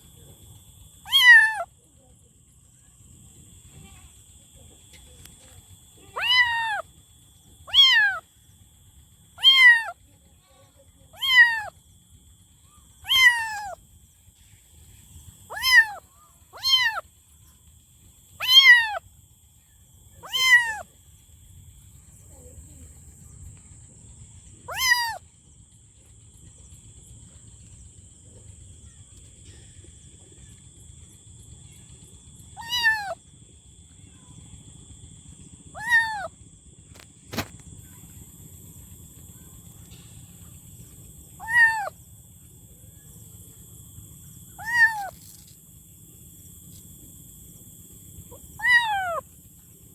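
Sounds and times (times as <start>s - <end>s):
kitten meowing: 1.1s - 1.7s, 6.1s - 6.9s, 7.7s - 8.2s, 9.4s - 10.0s, 11.2s - 11.7s, 13.0s - 13.8s, 15.5s - 17.0s, 18.4s - 19.0s, 20.2s - 20.9s, 24.7s - 25.2s, 32.6s - 33.2s, 35.8s - 36.3s, 41.4s - 42.0s, 44.6s - 45.4s, 48.3s - 49.2s.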